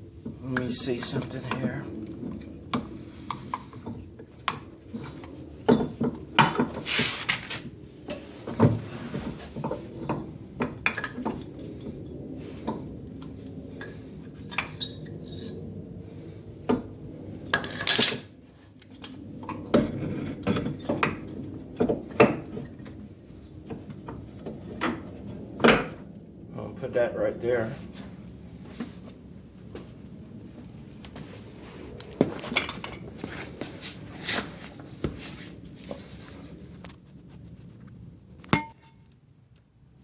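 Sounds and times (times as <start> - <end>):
short scraping rushes: 6.8 - 7.6.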